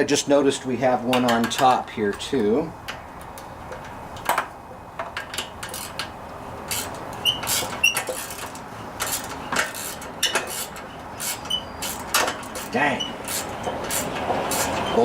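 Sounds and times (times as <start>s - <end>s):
socket wrench clicking on bolts: 3.7s - 14.8s.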